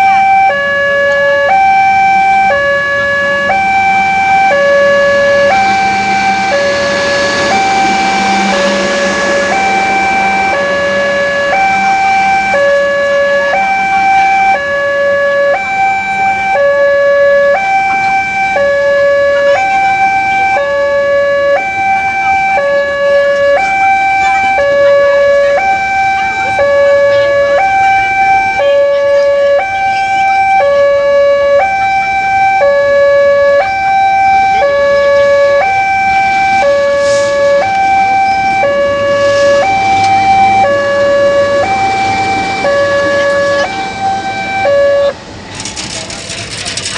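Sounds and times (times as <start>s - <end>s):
two-tone hi-lo siren: 0.0s - 45.9s.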